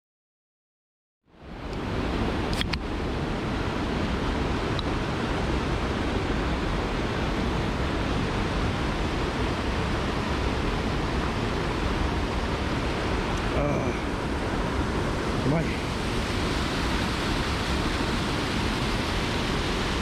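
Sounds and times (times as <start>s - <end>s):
fast-running river: 1.3s - 20.0s
heavy rain: 1.8s - 20.0s.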